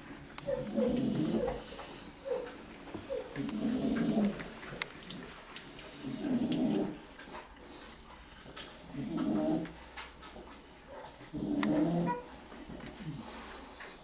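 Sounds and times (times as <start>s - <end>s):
pet snoring: 0.4s - 2.1s, 3.1s - 4.6s, 5.9s - 7.2s, 8.4s - 10.0s, 11.2s - 14.0s.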